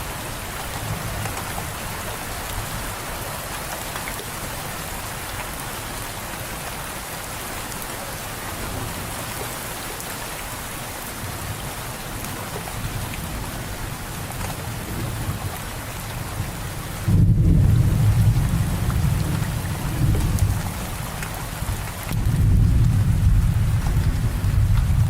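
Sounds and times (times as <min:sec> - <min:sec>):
steady rain falling: 0:00.0 - 0:25.0
thunder rumbling: 0:16.2 - 0:25.0.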